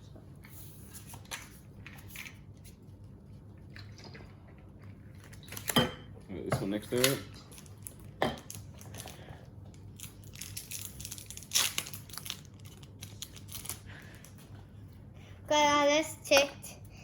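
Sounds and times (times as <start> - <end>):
trading cards rustling: 10.0 - 14.4.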